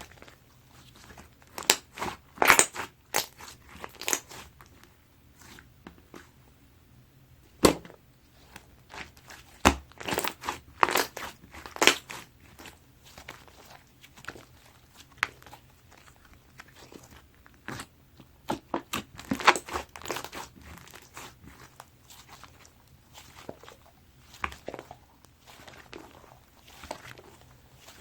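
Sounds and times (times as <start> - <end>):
slime squished crackling and popping: 0.0 - 4.8, 7.6 - 28.0.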